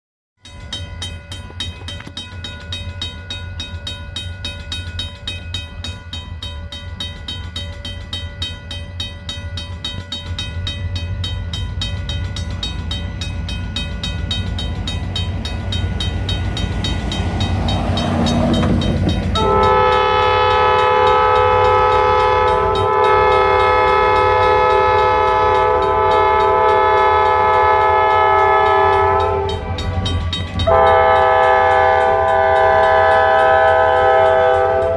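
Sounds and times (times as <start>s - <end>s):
diesel locomotive engines running: 0.6s - 34.9s
locomotive air horn chord: 16.6s - 34.9s.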